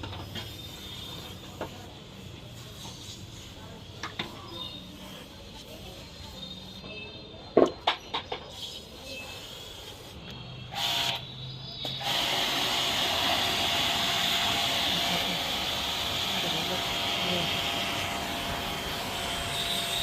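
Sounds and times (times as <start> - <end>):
loud steady hiss: 12.0 - 20.0.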